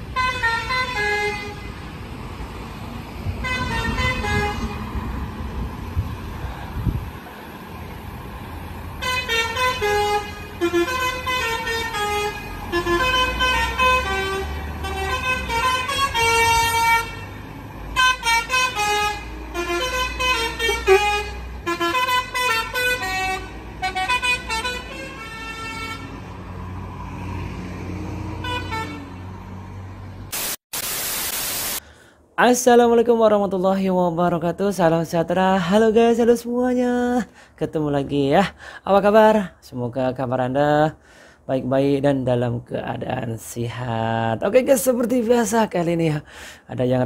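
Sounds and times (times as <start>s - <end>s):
multi-tone horn playing a tune: 0.1s - 1.8s, 3.4s - 4.9s, 9.0s - 26.2s, 28.4s - 29.2s.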